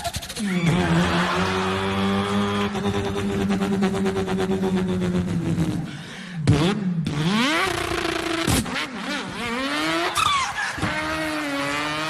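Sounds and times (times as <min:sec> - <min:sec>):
man imitating car engine: 0:00.0 - 0:08.4.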